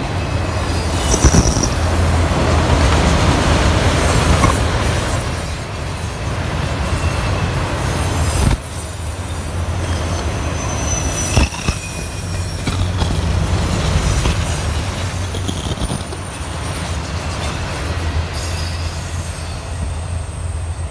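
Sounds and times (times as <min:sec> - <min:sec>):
train wheels rumbling on rails: 0:00.0 - 0:20.9
high wheel squeal: 0:00.4 - 0:20.9.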